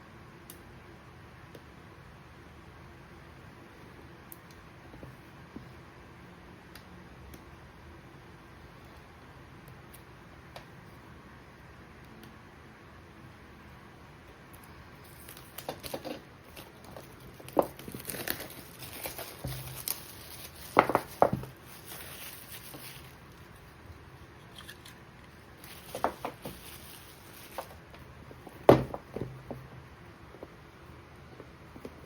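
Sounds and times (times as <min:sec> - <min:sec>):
packaging crinkling and rustling: 0:15.1 - 0:23.7, 0:24.4 - 0:29.6.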